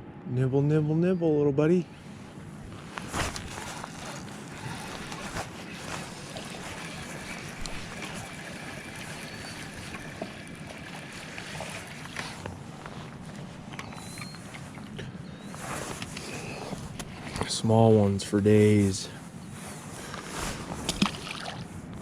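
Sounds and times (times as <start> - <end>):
river water rushing: 3.1 - 13.2.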